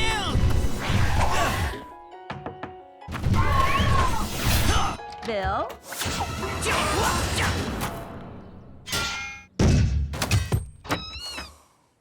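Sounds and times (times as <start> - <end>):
music: 0.0 - 9.5.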